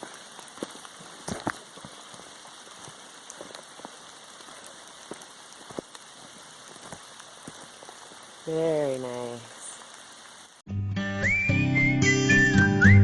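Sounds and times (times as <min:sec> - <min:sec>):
raindrops ticking nearby: 0:00.0 - 0:10.6
steady rain in woods: 0:00.0 - 0:10.6.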